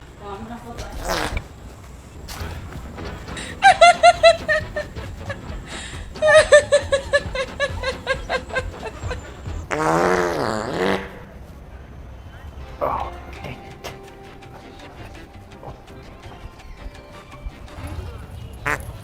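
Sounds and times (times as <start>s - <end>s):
fart sounds: 0.9s - 11.3s.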